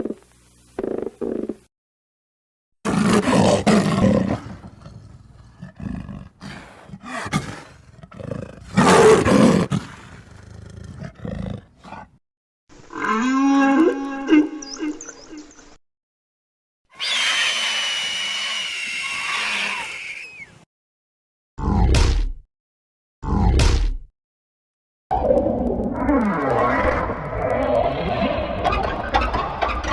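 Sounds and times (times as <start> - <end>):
high musical monster cry: 17.0 - 20.4.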